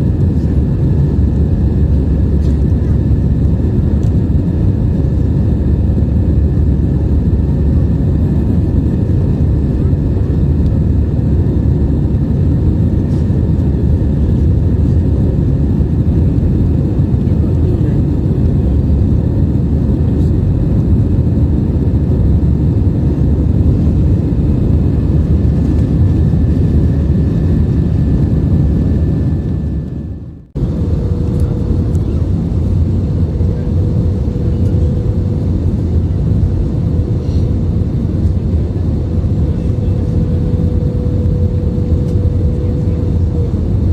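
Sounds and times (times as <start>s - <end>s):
jet engines and airflow rush: 0.0s - 43.9s.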